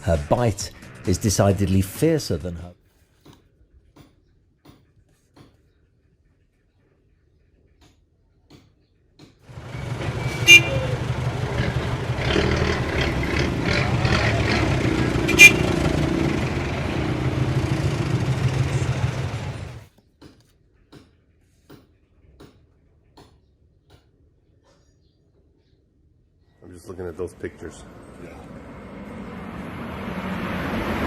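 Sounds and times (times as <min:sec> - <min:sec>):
vehicle engine rumbling: 0:09.5 - 0:19.8, 0:26.9 - 0:31.0.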